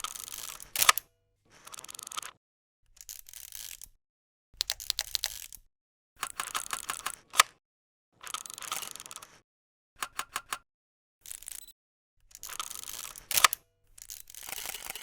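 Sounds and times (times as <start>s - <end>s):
camera shutter clicks: 12.4s - 13.6s.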